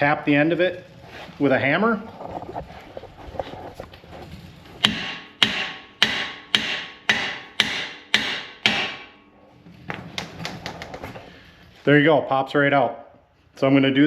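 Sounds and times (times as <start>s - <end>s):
hammer striking metal rod: 4.8s - 9.2s.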